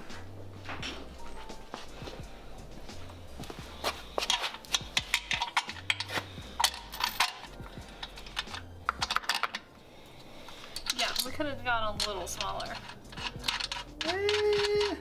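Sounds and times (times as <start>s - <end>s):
background music with bass line: 0.0s - 9.8s
metallic clicks of hand tools: 4.2s - 9.7s, 12.0s - 15.0s.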